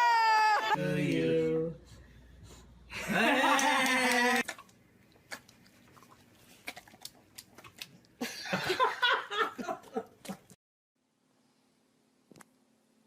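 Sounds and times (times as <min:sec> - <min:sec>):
person laughing: 0:02.9 - 0:04.4.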